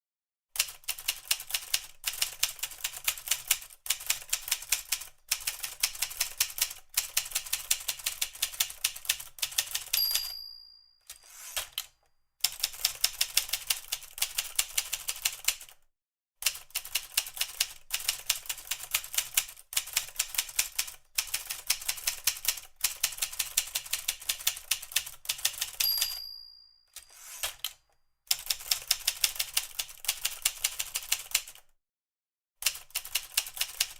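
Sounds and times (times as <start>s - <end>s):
typewriter margin bell ding: 9.8s - 11.6s, 25.6s - 27.6s
typewriter carriage return slide: 11.1s - 11.9s, 27.0s - 27.8s.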